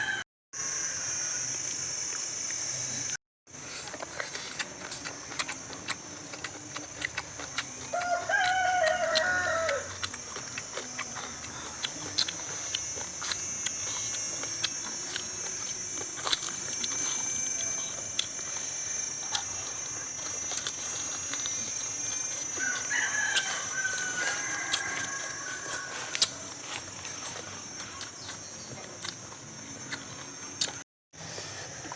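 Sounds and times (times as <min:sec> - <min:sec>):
rooster crowing: 0:00.0 - 0:01.5, 0:07.8 - 0:10.8, 0:22.3 - 0:26.8.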